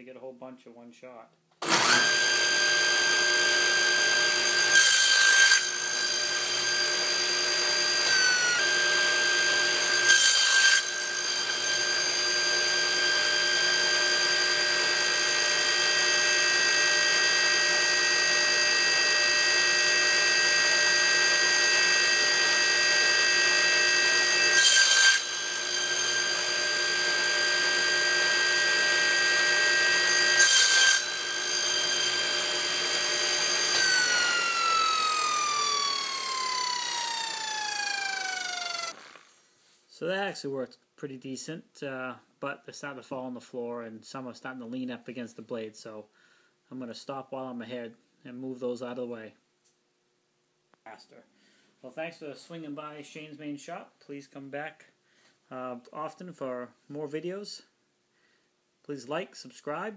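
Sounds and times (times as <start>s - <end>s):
saw rasping through wood: 1.6s - 39.2s
table saw motor whine: 1.6s - 39.3s.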